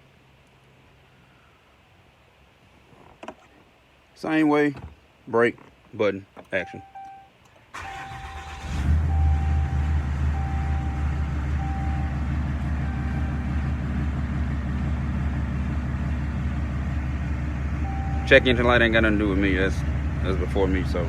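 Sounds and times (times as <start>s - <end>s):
dashboard chime beeping: 6.6s - 7.3s, 9.1s - 13.5s, 17.8s - 18.7s
diesel engine idling: 7.7s - 21.0s.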